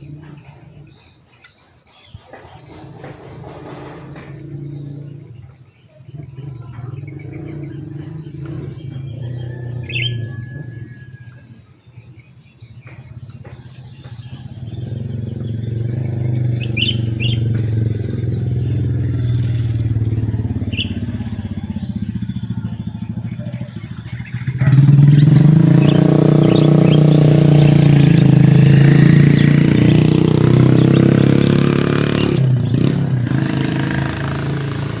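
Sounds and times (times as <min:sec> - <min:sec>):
bird chirps: 0:00.0 - 0:35.0.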